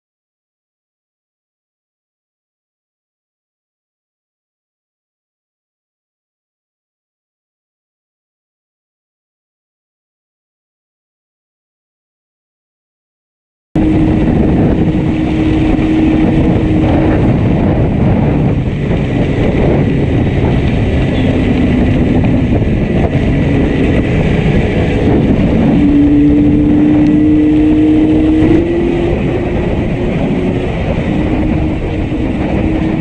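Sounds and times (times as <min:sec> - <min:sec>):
misfiring motorcycle engine: 0:13.8 - 0:33.0
wind noise on microphone: 0:13.8 - 0:33.0.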